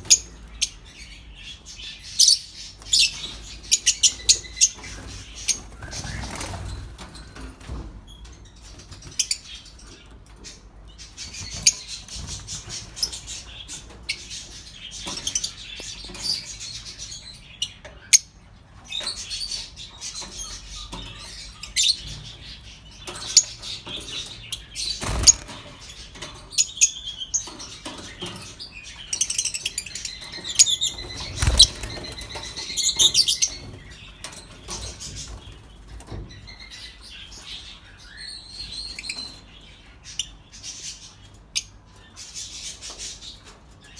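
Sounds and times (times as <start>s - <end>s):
lovebirds chirping: 0.0s - 7.5s, 8.1s - 43.5s
wing flutters: 25.0s - 25.7s.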